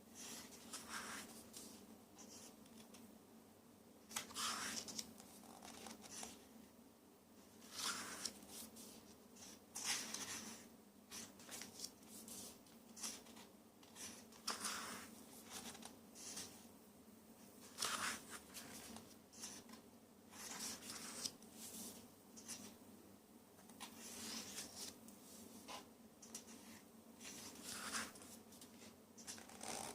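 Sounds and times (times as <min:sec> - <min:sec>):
pages turning rustle: 0:07.6 - 0:16.6, 0:17.6 - 0:22.7, 0:23.7 - 0:25.0.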